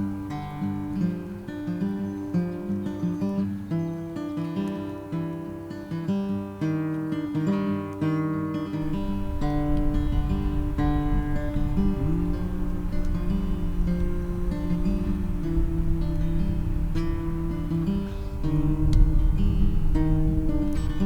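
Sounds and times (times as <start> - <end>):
acoustic guitar melody: 0.0 - 21.0
low rumble: 8.8 - 21.0.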